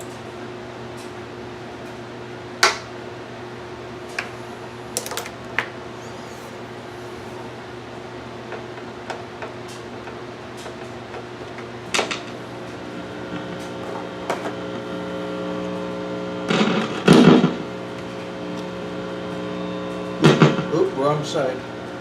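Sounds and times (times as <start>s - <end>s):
guitar amp humming: 3.6s - 22.0s
crackling buzzes: 11.8s - 22.0s.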